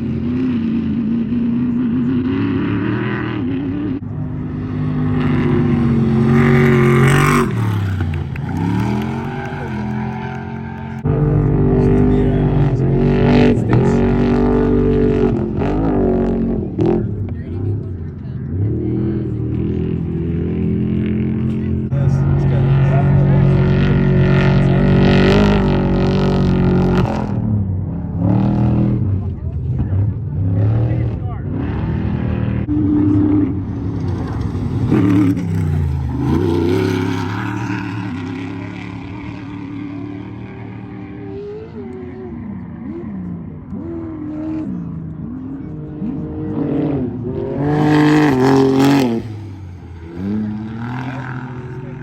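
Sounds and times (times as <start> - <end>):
race engines revving high: 0.0 - 52.0.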